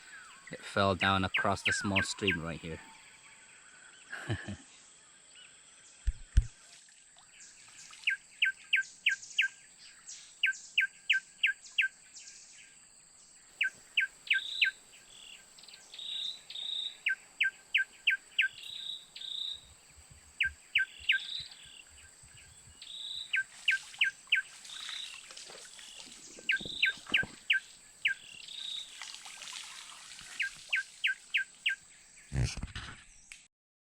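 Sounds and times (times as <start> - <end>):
bird high single notes: 0.0 - 3.0, 25.8 - 28.8.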